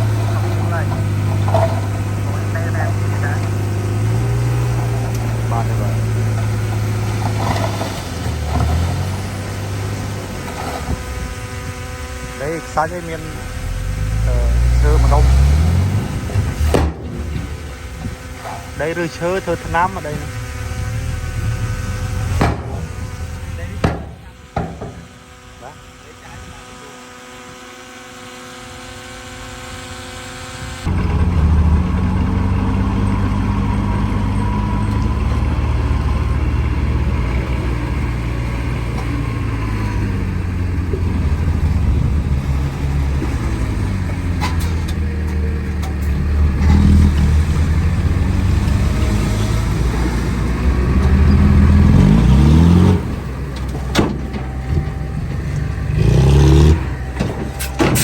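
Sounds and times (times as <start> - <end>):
heavy diesel engine rumbling: 0.0 - 27.3, 28.8 - 58.0
sharp knocks: 16.3 - 17.6, 22.3 - 23.2, 23.8 - 25.2.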